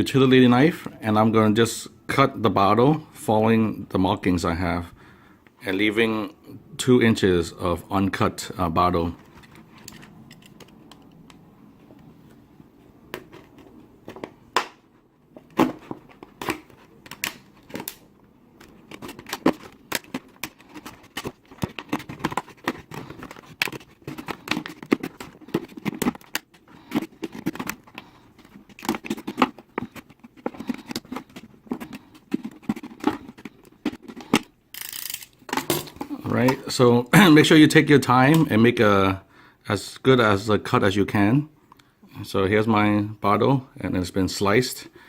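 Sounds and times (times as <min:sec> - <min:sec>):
plastic crinkling: 0:15.7 - 0:34.4
knife cutting plastic bottle: 0:18.6 - 0:34.5.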